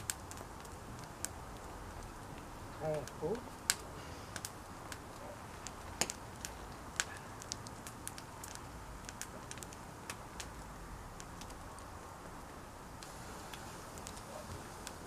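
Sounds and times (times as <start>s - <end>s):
sharp crackles and pops: 0.0s - 15.0s.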